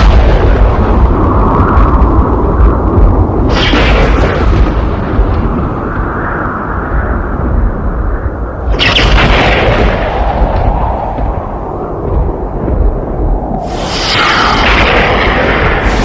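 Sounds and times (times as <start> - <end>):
sharp thunderclap crack: 0.0 - 5.9, 8.6 - 16.0
thunder rumbling: 0.0 - 16.0.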